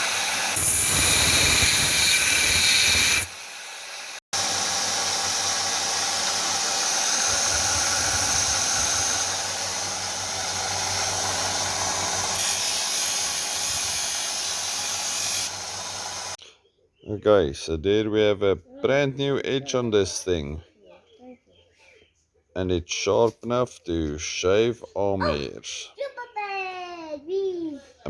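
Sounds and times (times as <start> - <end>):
grinder grinding steel: 0.0 - 16.4
grinder motor hum: 0.0 - 16.4.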